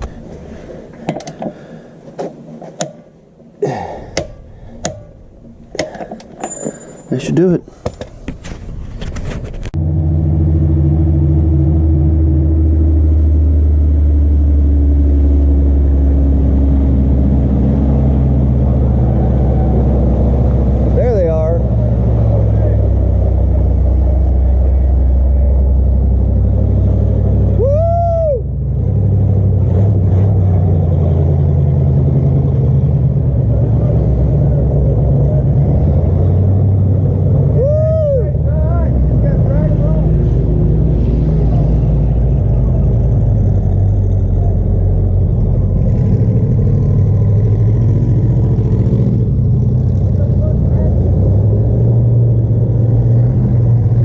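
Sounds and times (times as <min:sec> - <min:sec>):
car engine and road hum: 0:00.0 - 0:54.0.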